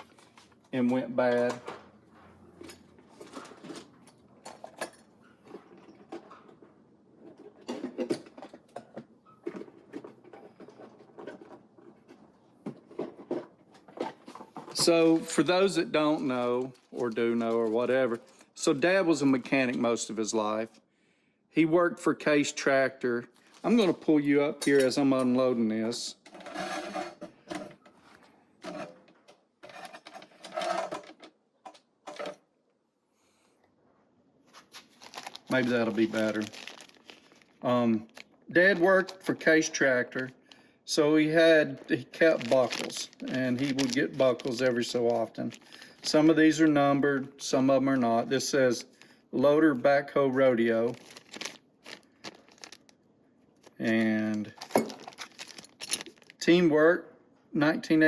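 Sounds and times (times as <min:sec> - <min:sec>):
small items clicking and rattling: 0:34.7 - 0:39.4, 0:42.1 - 0:46.2, 0:50.9 - 0:53.0, 0:53.6 - 0:56.5.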